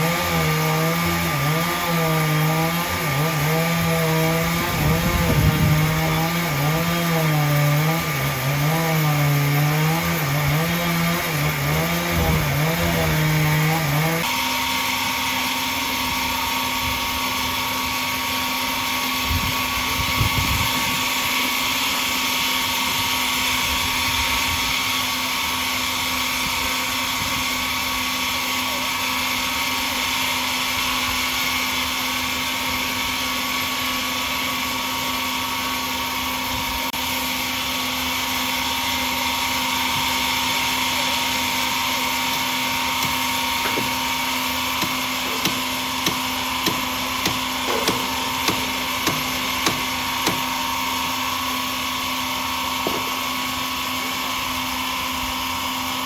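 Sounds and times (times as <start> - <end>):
sawmill machinery humming and whining: 0.0 - 56.0.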